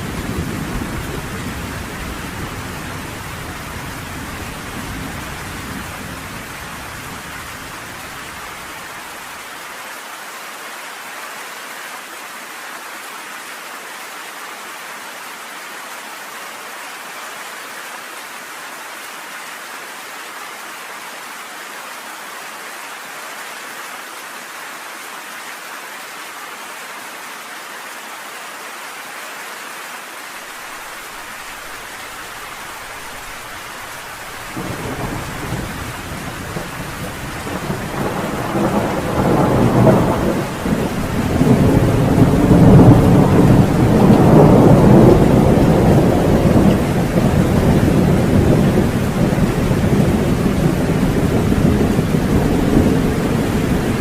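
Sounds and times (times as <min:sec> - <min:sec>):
thunder rumbling: 0:00.0 - 0:08.6, 0:32.8 - 0:54.0
steady rain falling: 0:00.0 - 0:54.0.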